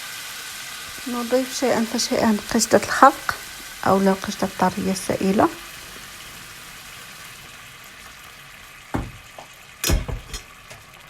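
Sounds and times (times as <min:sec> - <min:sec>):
sauce sizzling in a frying pan: 0:00.0 - 0:11.0
utensil knocking against pan: 0:08.9 - 0:10.5.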